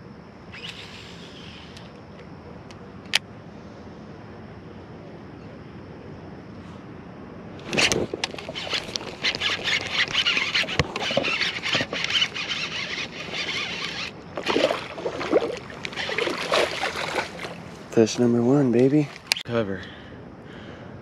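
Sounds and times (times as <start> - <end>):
fish splashing in water: 7.6 - 17.9.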